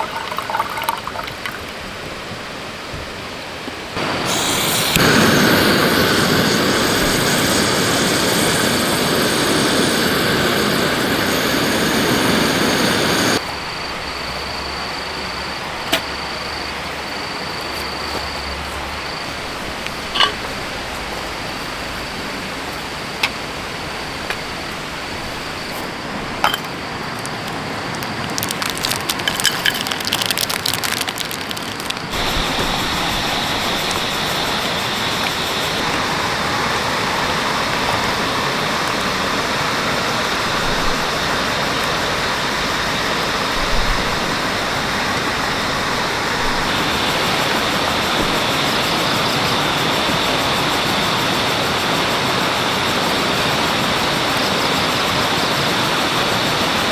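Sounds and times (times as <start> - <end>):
forest stream rushing: 3.9 - 13.4, 19.0 - 56.9
crackles and clicks: 4.0 - 13.4, 26.4 - 34.3.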